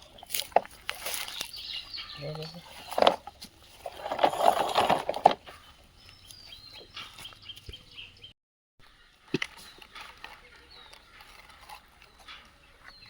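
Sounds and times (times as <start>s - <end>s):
small rocks clattering: 2.8s - 5.6s.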